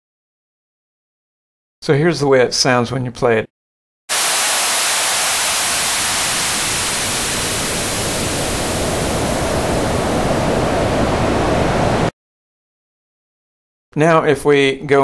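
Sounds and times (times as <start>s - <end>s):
white noise hiss: 4.1s - 12.1s.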